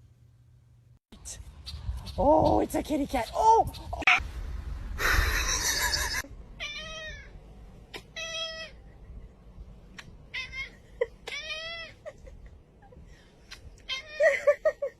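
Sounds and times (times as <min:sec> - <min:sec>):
cat meowing: 0:06.6 - 0:07.3.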